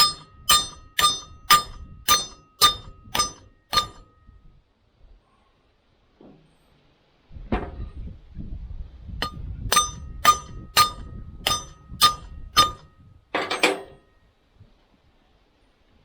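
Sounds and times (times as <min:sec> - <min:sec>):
metal rattling clank: 0:00.0 - 0:04.1, 0:09.2 - 0:14.0
low handling noise: 0:00.0 - 0:04.2, 0:09.2 - 0:14.0
hammer blows on metal: 0:00.0 - 0:04.3, 0:09.2 - 0:14.0.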